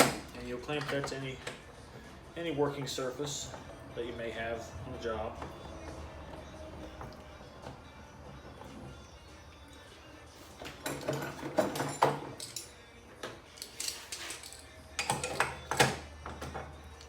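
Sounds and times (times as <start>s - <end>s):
metal clamps clanking and rattling: 10.6s - 12.8s, 13.5s - 16.7s.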